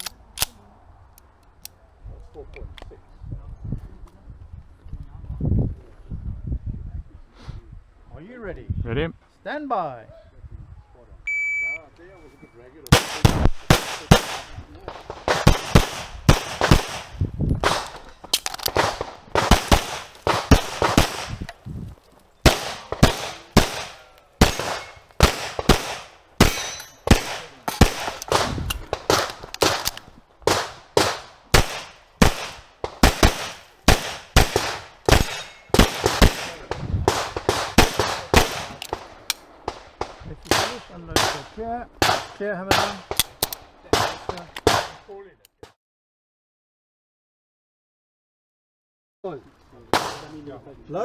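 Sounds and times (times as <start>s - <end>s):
handgun shots: 12.9s - 45.0s, 50.0s - 50.6s.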